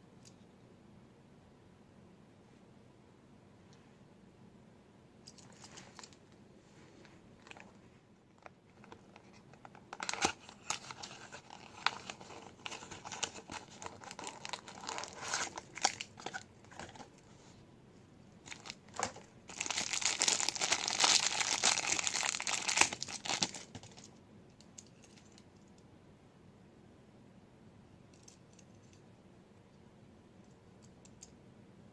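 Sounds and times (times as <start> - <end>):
packaging crinkling and tearing: 7.4 - 7.8, 8.4 - 17.2, 18.4 - 24.0.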